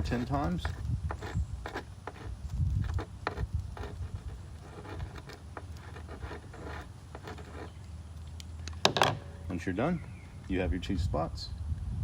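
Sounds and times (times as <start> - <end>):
cable stripper blades clicking and scraping: 0.0 - 7.8.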